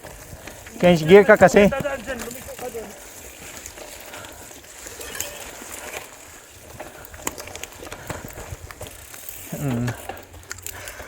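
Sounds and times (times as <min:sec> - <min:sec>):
bicycle clicks and rattles: 0:00.0 - 0:11.0
bicycle tyres on dirt: 0:00.0 - 0:11.0.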